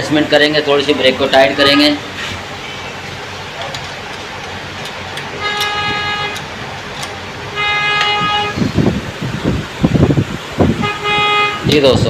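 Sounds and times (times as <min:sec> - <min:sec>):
engine and traffic hum: 0:00.0 - 0:12.0
vehicle horn toots: 0:05.3 - 0:06.5, 0:07.5 - 0:08.9, 0:10.7 - 0:12.0
uneven low rumbling: 0:05.3 - 0:12.0.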